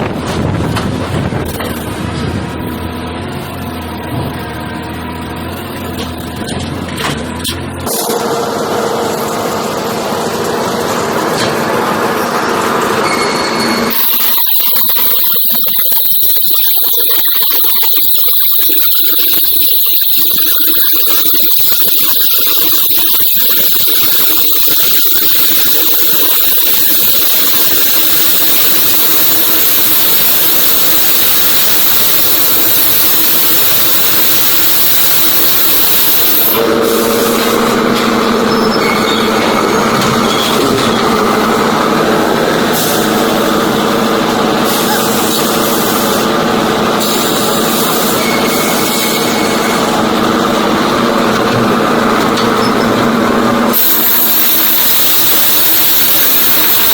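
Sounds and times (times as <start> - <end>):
machine hum with pitched tones: 0.0 - 56.9
high hissing noise: 13.9 - 37.8, 53.8 - 56.9.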